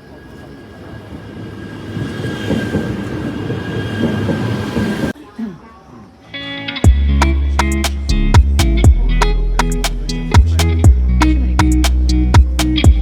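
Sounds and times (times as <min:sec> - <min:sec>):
train rumbling on rails: 0:00.0 - 0:05.2
guitar music: 0:06.3 - 0:13.0.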